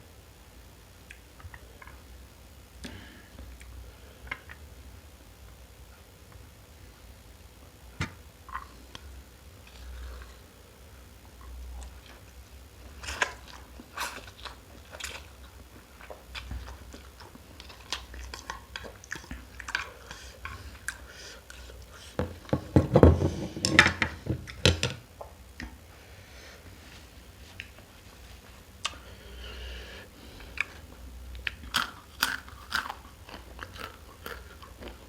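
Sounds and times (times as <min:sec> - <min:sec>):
person chewing food: 0:11.3 - 0:22.8, 0:28.7 - 0:35.0.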